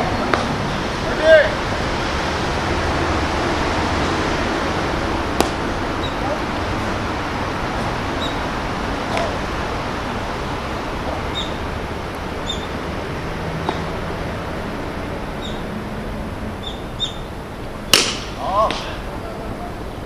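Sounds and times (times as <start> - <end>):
outdoor background noise: 0.0 - 20.0
small bird chirping: 11.3 - 11.6, 12.4 - 12.7, 15.4 - 15.7, 16.6 - 17.3.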